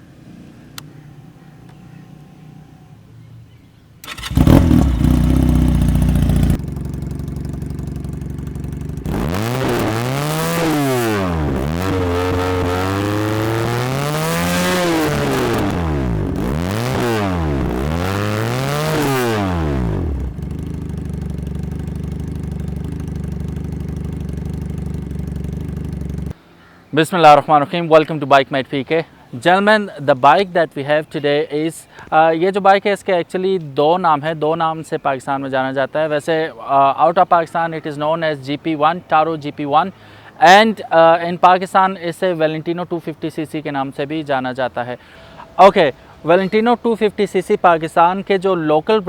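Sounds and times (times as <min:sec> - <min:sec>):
motorcycle engine idling and revving: 0:04.0 - 0:26.4
motorcycle engine starting: 0:04.0 - 0:26.4.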